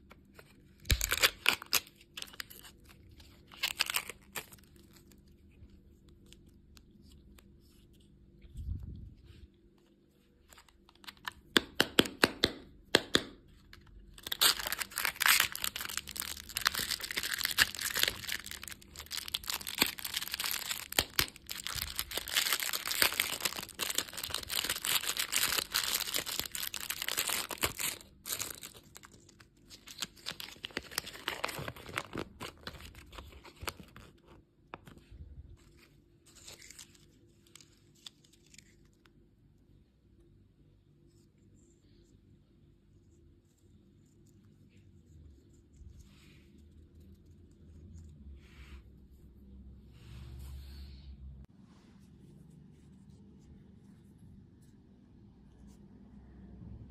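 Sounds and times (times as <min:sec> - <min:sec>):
candy wrapper tearing and crinkling: 0:00.3 - 0:07.4, 0:13.7 - 0:34.4, 0:36.3 - 0:39.0.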